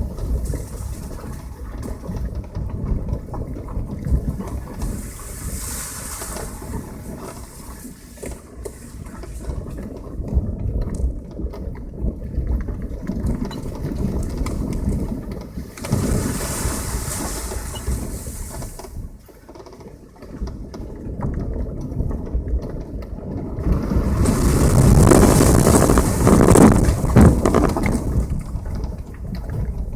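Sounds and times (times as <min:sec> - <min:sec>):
knocks and rattles: 0:23.6 - 0:29.1.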